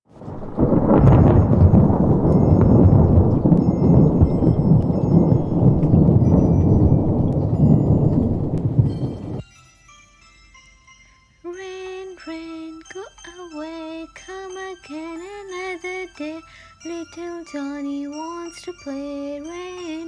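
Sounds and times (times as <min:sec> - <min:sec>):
low thunder rumble: 0:00.1 - 0:09.4
high chiming tones: 0:00.6 - 0:20.0.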